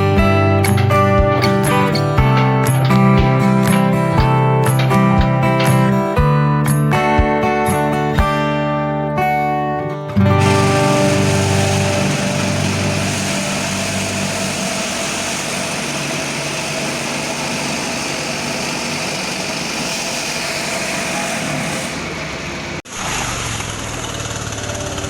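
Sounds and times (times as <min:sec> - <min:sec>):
concrete cutter engine running: 0:00.0 - 0:06.1, 0:10.4 - 0:25.0
broad hiss: 0:10.4 - 0:17.6.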